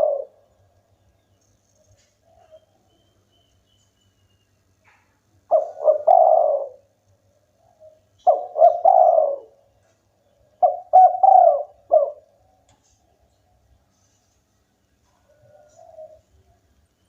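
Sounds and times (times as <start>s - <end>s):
dove cooing: 0.0s - 0.5s, 1.9s - 2.8s, 4.9s - 12.5s, 15.2s - 16.7s.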